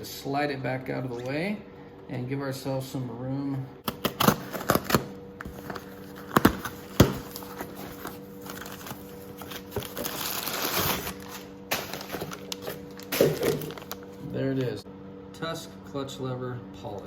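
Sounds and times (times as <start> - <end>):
packaging rustling and crinkling: 3.9 - 14.3.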